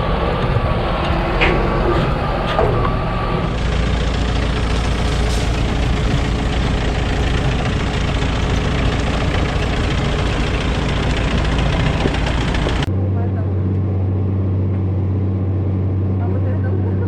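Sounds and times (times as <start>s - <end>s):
farm machine engine running: 0.0s - 12.9s.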